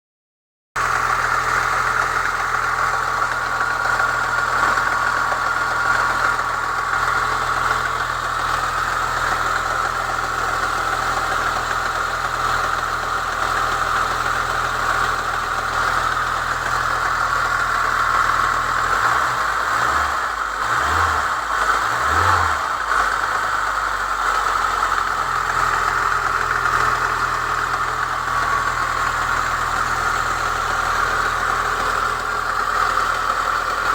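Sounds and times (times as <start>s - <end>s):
car engine idling: 0.8s - 33.9s
engine knocking: 0.8s - 33.9s.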